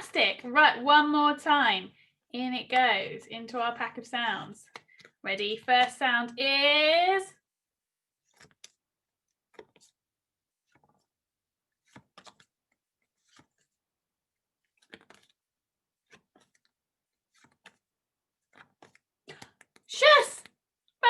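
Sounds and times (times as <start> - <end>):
paper flashcards flipping: 8.2 - 20.6.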